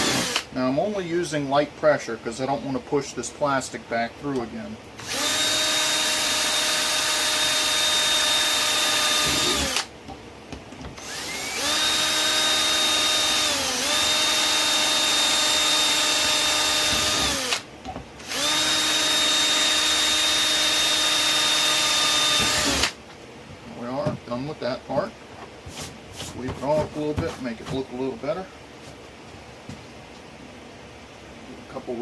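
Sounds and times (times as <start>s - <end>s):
electric drill whine: 0.0s - 0.5s, 5.0s - 9.9s, 11.0s - 23.0s.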